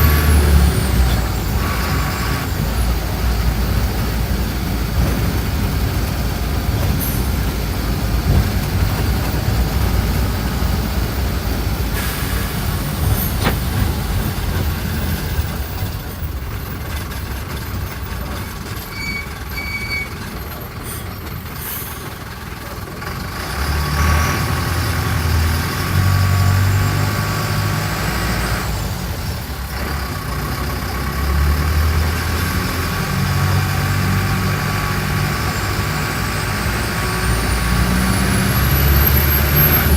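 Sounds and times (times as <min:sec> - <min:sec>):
bus diesel engine running: 0:00.0 - 0:39.9
short high beeps: 0:18.9 - 0:20.2.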